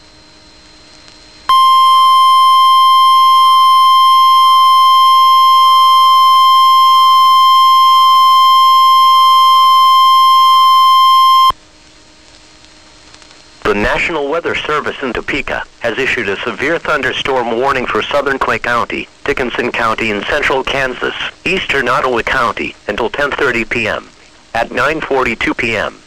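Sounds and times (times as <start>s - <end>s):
steady warning alarm tone: 1.5s - 11.5s.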